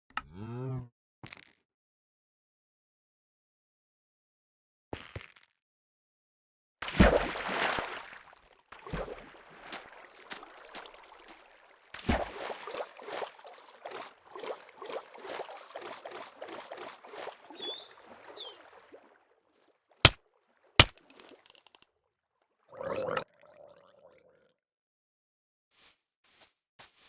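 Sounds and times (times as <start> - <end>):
water splashing and sloshing: 6.8 - 21.8.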